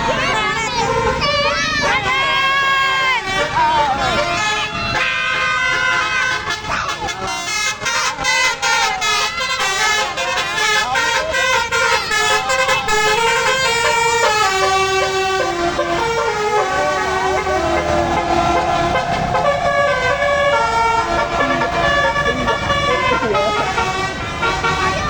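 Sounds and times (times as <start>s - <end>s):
engine rumble: 0.0s - 25.0s
musical air horn playing tune: 4.2s - 25.0s.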